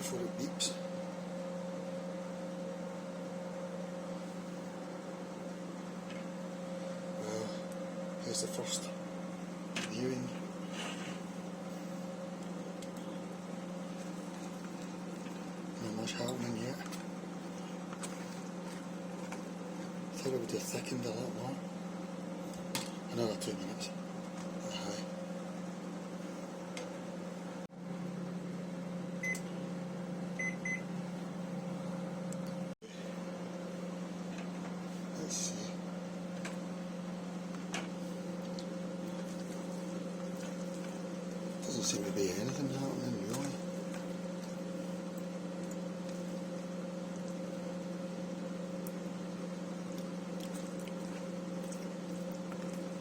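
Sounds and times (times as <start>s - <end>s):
microwave oven humming: 0.0s - 53.0s.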